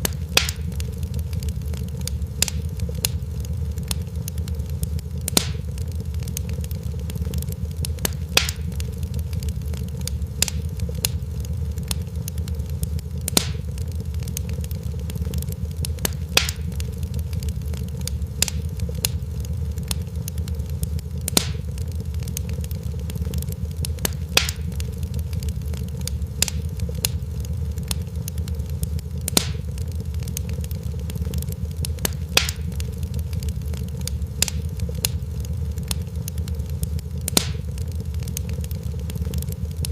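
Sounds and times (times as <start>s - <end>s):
sharp fire pops: 0.0s - 39.9s
wood fire crackling: 0.0s - 39.9s.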